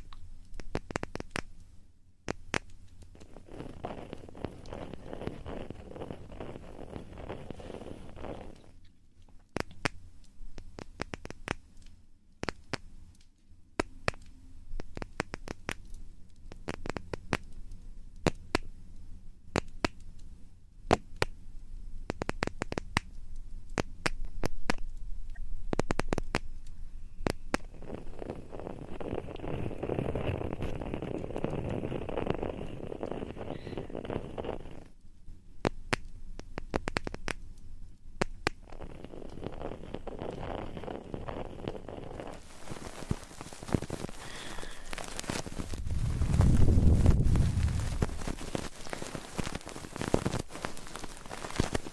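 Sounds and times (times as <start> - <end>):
clicks and scratches near microphone: 0.0 - 1.7, 2.3 - 18.7, 22.1 - 35.0, 35.6 - 37.6, 38.2 - 51.9
continuous rubbing: 3.0 - 8.8, 27.4 - 35.0, 38.6 - 51.9.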